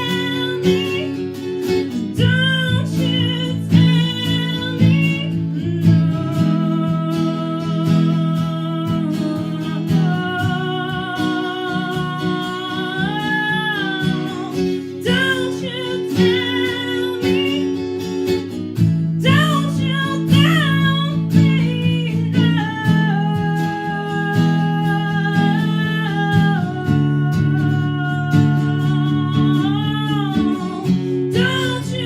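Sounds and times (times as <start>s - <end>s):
strummed guitar chords: 0.0s - 32.0s.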